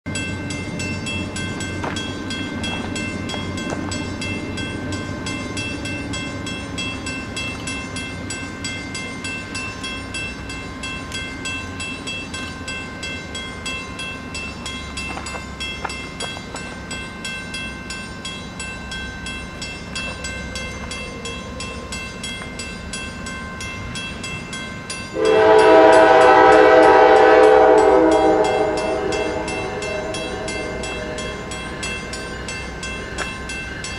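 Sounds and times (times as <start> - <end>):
train rumbling and clattering: 0.1 - 33.9
train horn: 25.2 - 31.5.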